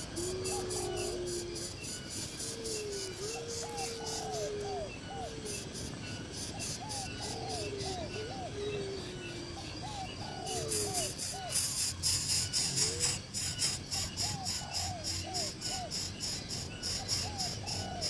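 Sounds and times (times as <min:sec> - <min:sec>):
background music with shaker beat: 0:00.0 - 0:08.2, 0:09.9 - 0:18.0
low bird-like calls: 0:00.0 - 0:18.0.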